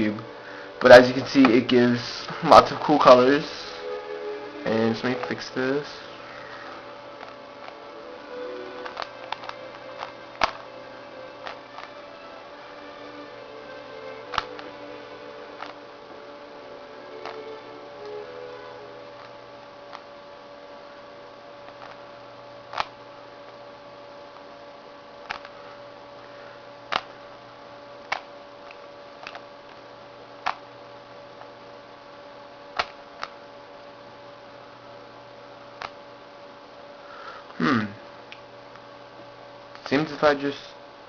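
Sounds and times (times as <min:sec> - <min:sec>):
steady electrical hum: 0:00.0 - 0:41.0
puzzle cube face turn clicks: 0:22.7 - 0:22.9, 0:25.2 - 0:25.5.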